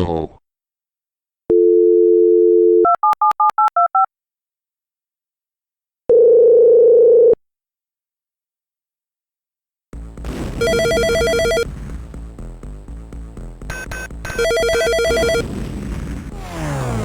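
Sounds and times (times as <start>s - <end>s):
dial tone: 1.5s - 4.1s, 6.1s - 7.4s, 10.6s - 11.7s, 13.7s - 15.4s
buzzy ringback tone: 10.6s - 11.7s, 13.7s - 15.4s.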